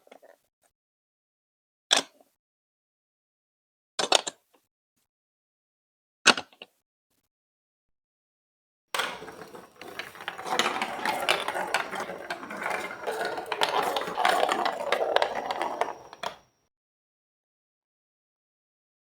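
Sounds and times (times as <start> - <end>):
marbles rattling down plastic track: 9.0 - 16.4.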